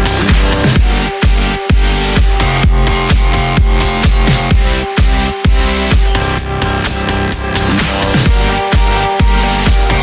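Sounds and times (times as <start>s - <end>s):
electronic dance music: 0.0s - 10.0s.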